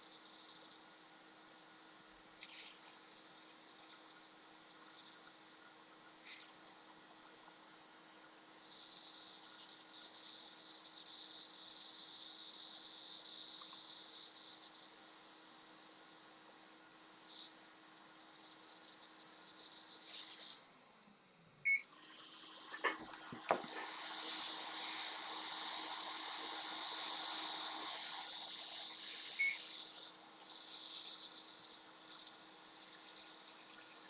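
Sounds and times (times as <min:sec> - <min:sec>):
hot air hissing: 0:02.1 - 0:03.6, 0:06.2 - 0:07.0, 0:15.6 - 0:20.8, 0:21.9 - 0:34.0.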